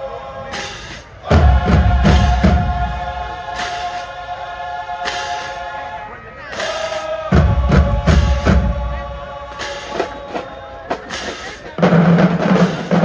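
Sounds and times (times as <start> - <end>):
marching band brass chord: 0.0 - 13.0
bass drums and percussion beats: 0.6 - 4.0, 6.6 - 10.2.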